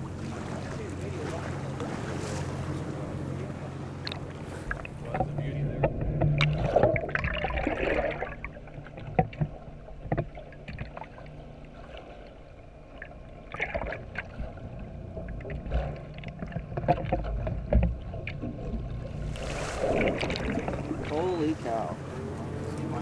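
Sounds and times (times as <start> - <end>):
boat engine droning: 0.0 - 23.0.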